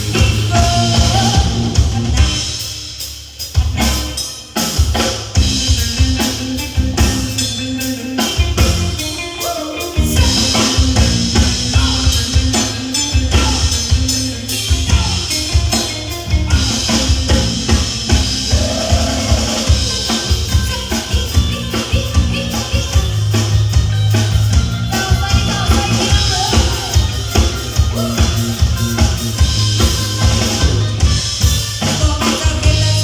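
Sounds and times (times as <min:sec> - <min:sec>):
live band playing: 0:00.0 - 0:33.0
drum kit kick and snare: 0:10.0 - 0:33.0.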